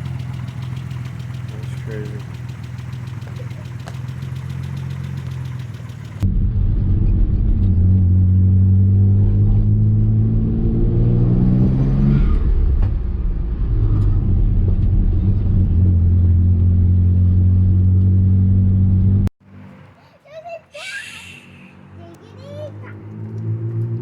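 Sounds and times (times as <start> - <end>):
car engine running: 0.0 - 10.3.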